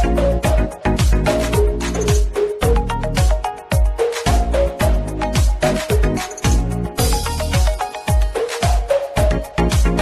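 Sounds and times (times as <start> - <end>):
music with deep thumping beat: 0.0 - 10.0.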